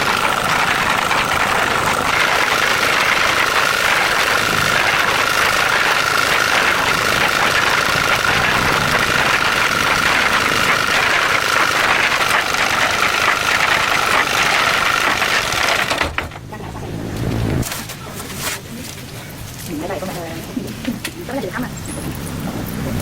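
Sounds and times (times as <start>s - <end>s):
small engine idling: 0.0s - 23.0s.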